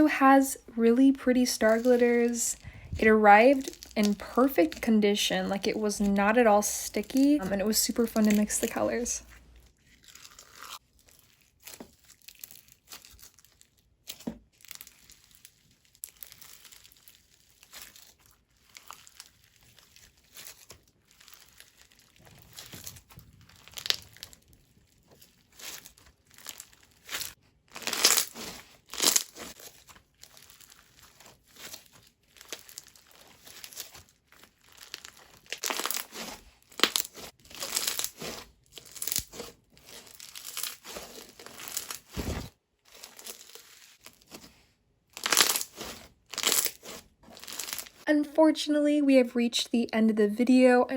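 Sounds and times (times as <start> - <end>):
crunchy slime being squeezed: 3.4 - 4.8, 9.7 - 44.4, 45.1 - 48.1.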